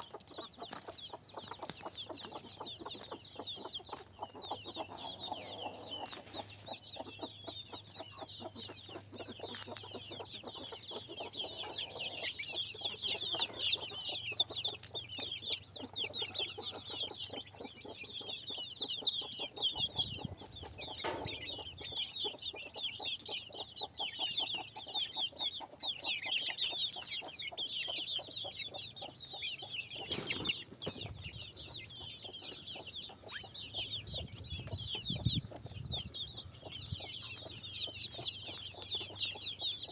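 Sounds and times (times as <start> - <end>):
chickens clucking: 0.0 - 39.9
high chirps chatter: 0.0 - 39.9.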